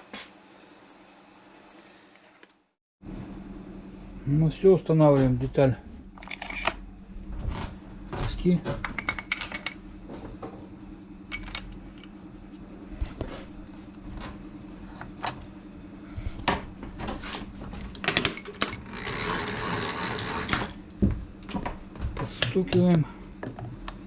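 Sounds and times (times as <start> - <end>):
steady low hum: 3.0 - 24.0
metal clinks and knocks: 6.2 - 6.8, 8.8 - 9.8, 11.3 - 12.2
scraping rasping noise: 18.9 - 20.6.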